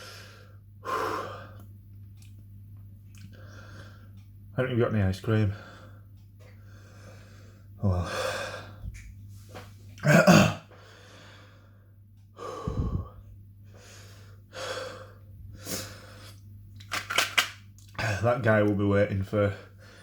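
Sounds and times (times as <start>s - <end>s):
man breathing hard and gasping: 10.7s - 16.4s.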